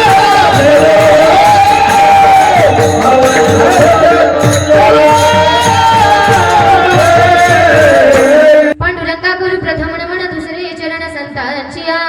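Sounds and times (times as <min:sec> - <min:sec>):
jingling percussion: 0:00.0 - 0:08.8
steady drum beat: 0:00.0 - 0:10.6.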